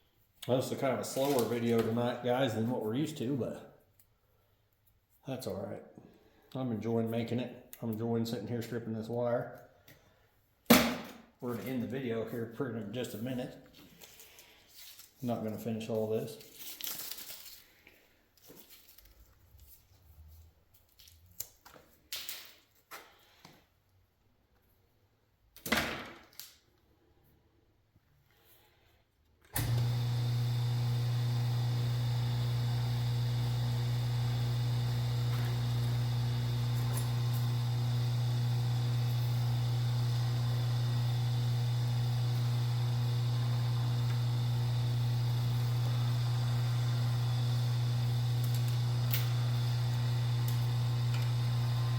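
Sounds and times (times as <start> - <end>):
low electrical motor hum: 29.6 - 51.9.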